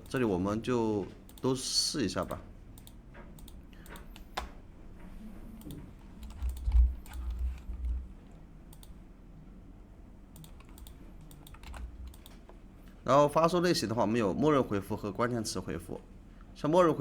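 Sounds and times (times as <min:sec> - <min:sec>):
keyboard and mouse clicks: 0:02.2 - 0:04.6, 0:05.6 - 0:09.0, 0:10.4 - 0:12.6.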